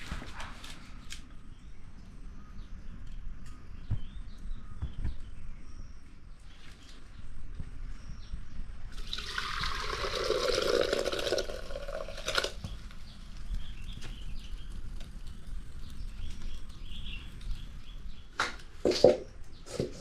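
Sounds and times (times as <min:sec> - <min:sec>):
liquid pouring into a pot: 0:08.9 - 0:12.7.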